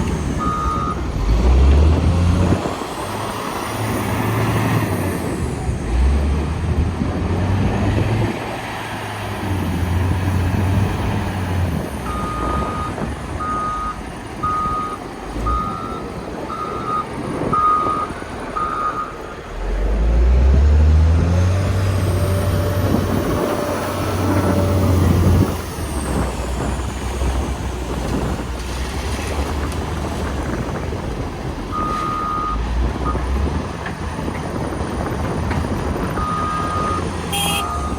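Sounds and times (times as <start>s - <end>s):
diesel engine revving under load: 0.0s - 37.9s
reversing alarm beeps: 0.4s - 1.0s, 12.1s - 19.1s, 36.2s - 37.9s.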